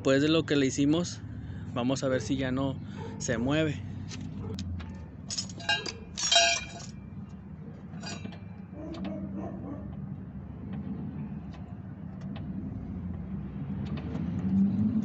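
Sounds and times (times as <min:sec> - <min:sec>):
metal rattling on metal: 0:05.2 - 0:07.0, 0:07.9 - 0:09.2
metallic clinks: 0:05.3 - 0:07.1, 0:08.0 - 0:08.6.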